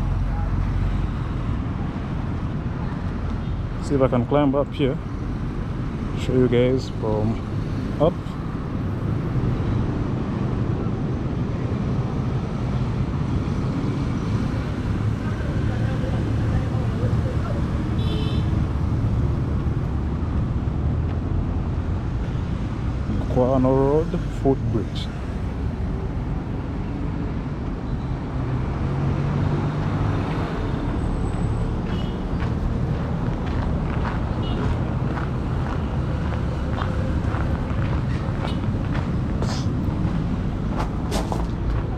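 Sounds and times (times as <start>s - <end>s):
low rumble of road traffic: 0.0s - 41.9s
heavy vehicle engine drone: 29.9s - 41.9s.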